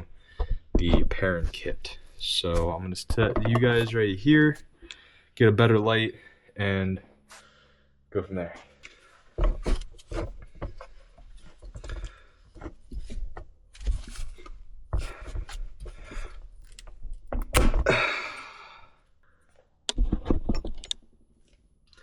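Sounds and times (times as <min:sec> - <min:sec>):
knocks and thuds of handling: 0:02.6 - 0:04.0, 0:09.3 - 0:16.2.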